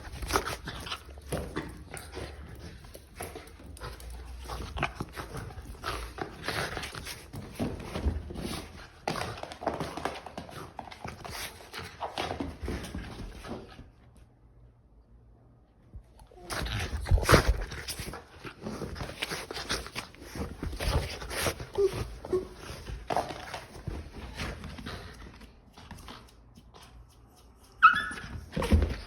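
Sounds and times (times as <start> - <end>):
dog whimpering and whining: 21.7 - 22.7, 27.8 - 29.0.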